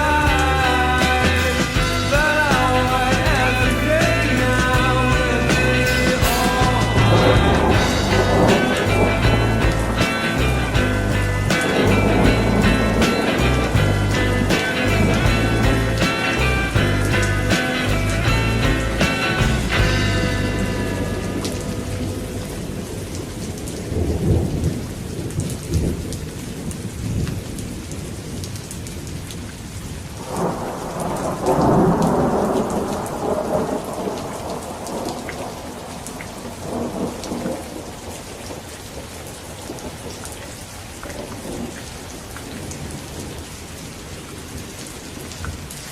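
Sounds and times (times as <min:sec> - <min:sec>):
thunder rumbling: 0:00.0 - 0:28.3, 0:30.2 - 0:40.2
raindrops ticking: 0:00.0 - 0:45.9
steady rain: 0:00.0 - 0:45.9.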